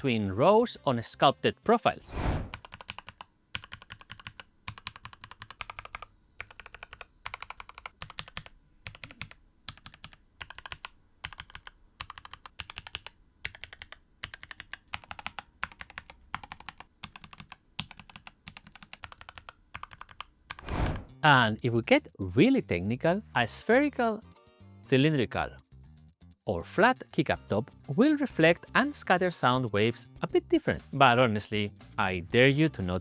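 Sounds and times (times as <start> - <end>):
mechanical keyboard typing: 2.4 - 20.8.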